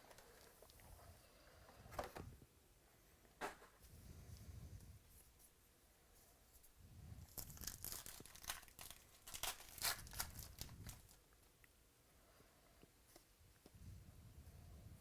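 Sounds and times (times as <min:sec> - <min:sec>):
wrapper tearing and crinkling: 0:07.3 - 0:11.2.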